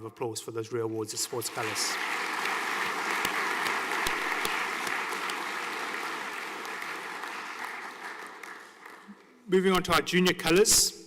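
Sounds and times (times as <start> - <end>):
audience applauding: 1.2 - 9.4.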